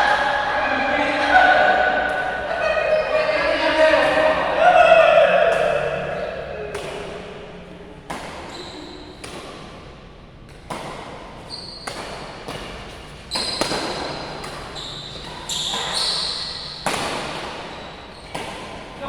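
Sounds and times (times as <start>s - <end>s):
racket striking shuttlecock: 5.0s - 19.0s
shoes squeaking on court floor: 8.4s - 9.4s, 11.4s - 19.0s.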